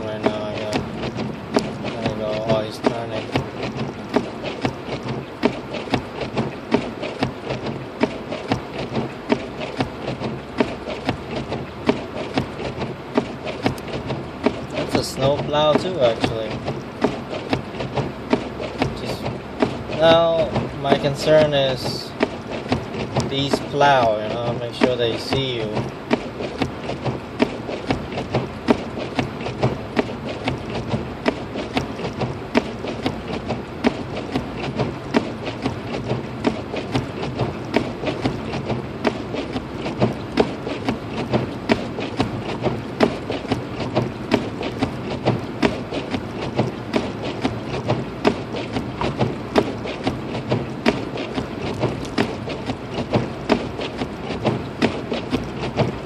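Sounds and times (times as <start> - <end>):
rapid irregular clicking and tapping: 0.0 - 56.0
road and engine noise in car: 0.0 - 56.0.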